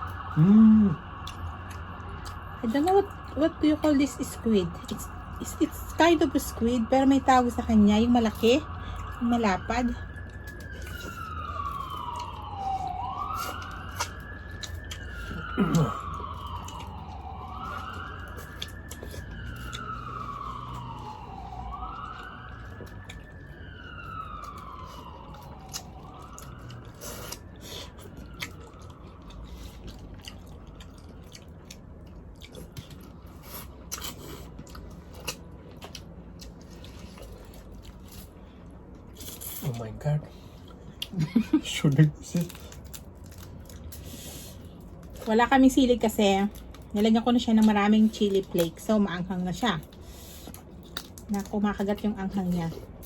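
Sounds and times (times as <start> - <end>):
shellfish crunching while chewed: 0.0 - 5.5, 10.0 - 49.0, 49.6 - 53.0
siren wailing: 0.0 - 43.9, 44.6 - 53.0.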